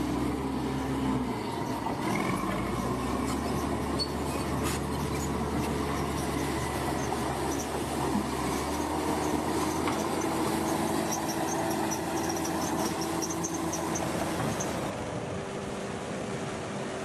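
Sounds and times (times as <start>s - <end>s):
diesel engine running: 0.0s - 17.0s
short high squeaks: 2.7s - 7.8s, 8.4s - 14.8s.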